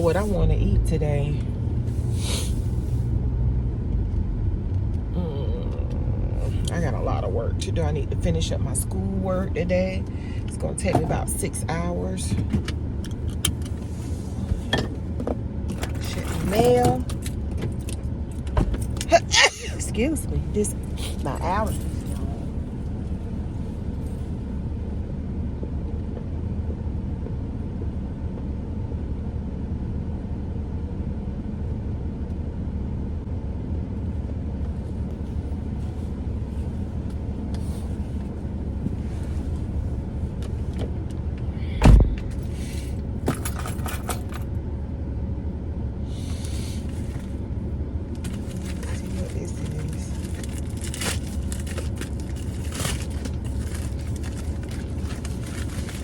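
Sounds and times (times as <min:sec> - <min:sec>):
car engine running: 0:00.0 - 0:56.0
loud thump: 0:41.8 - 0:42.4
clicking and rattling of objects: 0:48.2 - 0:56.0.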